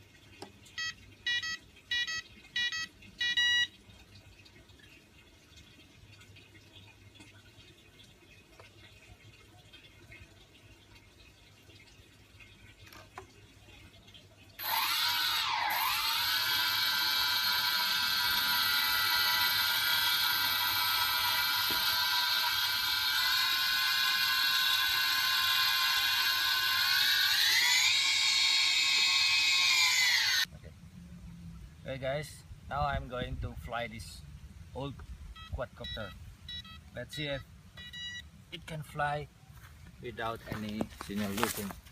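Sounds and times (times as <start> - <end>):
quadcopter motors whining: 14.6 - 30.5.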